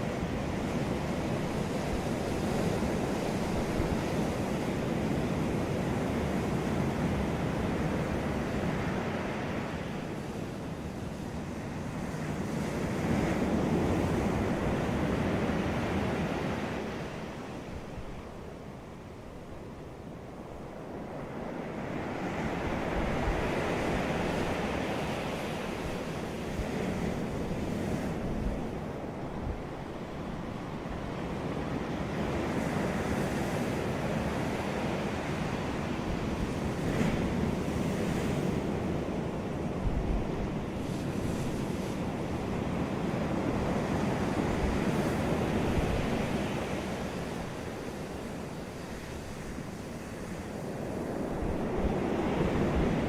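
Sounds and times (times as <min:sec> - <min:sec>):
ocean waves breaking: 0:20.6 - 0:53.0
wind buffeting microphone: 0:21.9 - 0:53.0.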